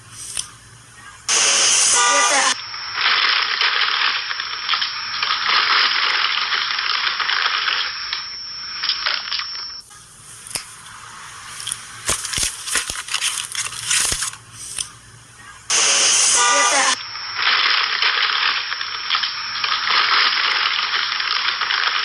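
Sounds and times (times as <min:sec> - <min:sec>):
sharp clicks and rattles: 0:11.6 - 0:14.4
dense crackling hiss: 0:15.7 - 0:22.0.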